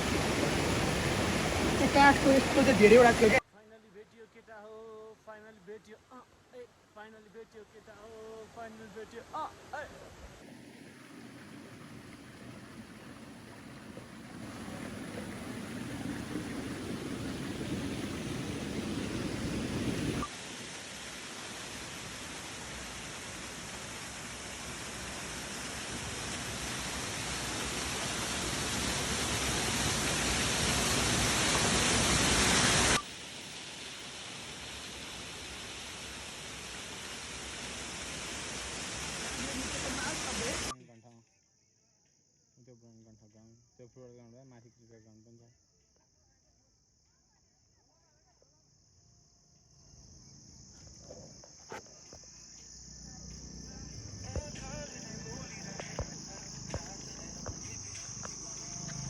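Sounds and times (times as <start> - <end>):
insects buzzing: 0.0 - 3.4, 9.7 - 20.4, 21.6 - 46.0, 48.5 - 59.0
waterfall rushing water: 0.0 - 3.4, 10.4 - 40.7.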